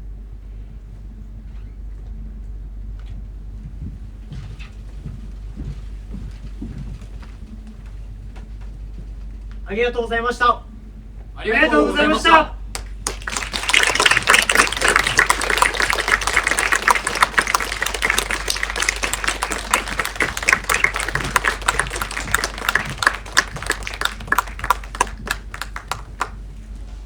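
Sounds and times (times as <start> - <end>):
audience applauding: 11.4 - 27.0.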